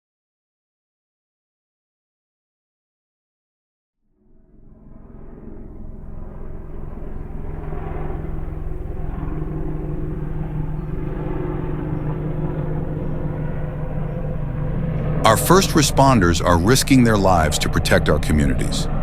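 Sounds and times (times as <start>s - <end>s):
engine rumble: 5.9s - 19.0s.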